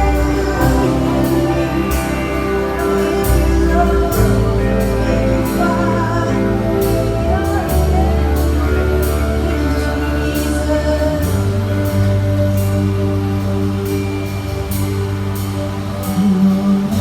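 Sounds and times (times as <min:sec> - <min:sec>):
people singing: 0:00.0 - 0:13.7
worship band playing: 0:00.0 - 0:17.0.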